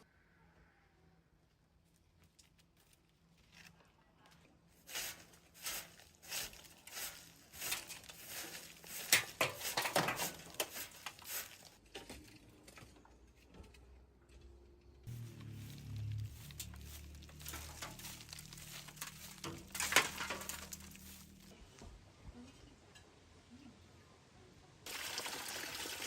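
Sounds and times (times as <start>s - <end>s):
rustling and crinkling: 1.8s - 13.8s, 15.1s - 22.6s.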